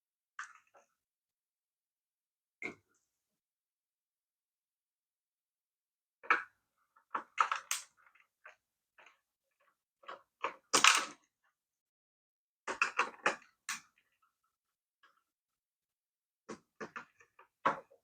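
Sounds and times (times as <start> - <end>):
plastic toy parts clicking: 7.2 - 8.0.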